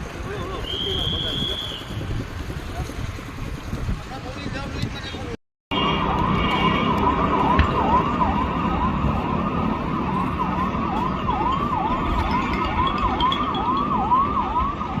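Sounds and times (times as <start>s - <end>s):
emergency vehicle siren wailing: 5.7s - 15.0s.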